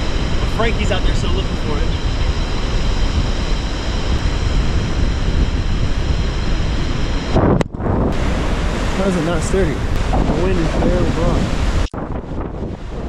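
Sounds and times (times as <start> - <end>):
wind buffeting microphone: 0.0 - 13.0
surf washing onto beach: 8.2 - 11.9.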